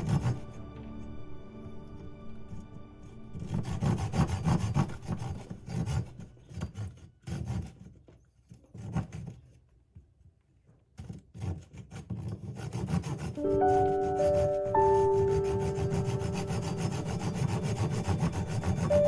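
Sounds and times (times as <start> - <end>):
saw cutting wood: 0.0 - 0.7, 2.6 - 7.9, 11.4 - 19.0.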